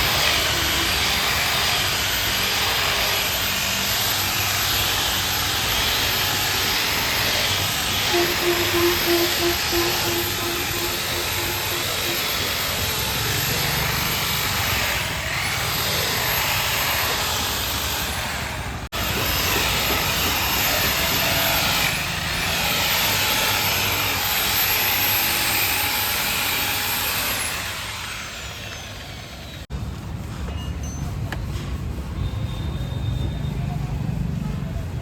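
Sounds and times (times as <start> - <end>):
buffing machine whine: 0.0 - 18.1.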